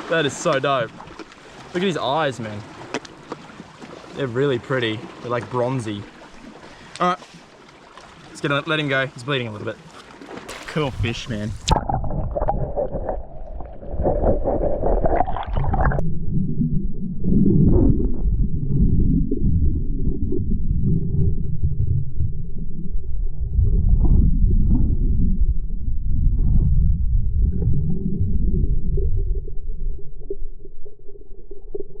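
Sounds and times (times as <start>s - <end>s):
water splashing and sloshing: 0.0s - 16.0s
underwater rumble with gurgling: 9.9s - 32.0s.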